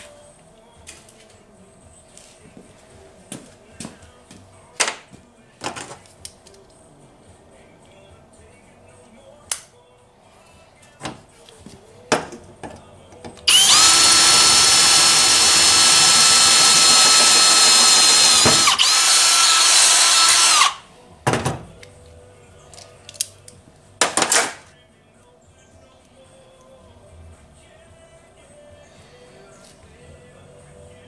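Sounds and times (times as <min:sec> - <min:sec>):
power drill running: 0:13.4 - 0:20.8.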